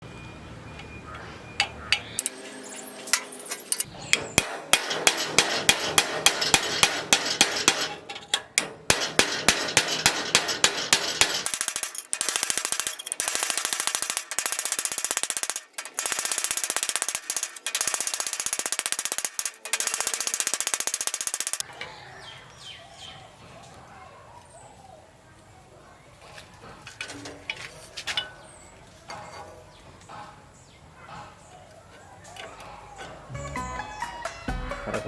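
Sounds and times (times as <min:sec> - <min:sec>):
welding arc crackling: 0:10.8 - 0:21.6.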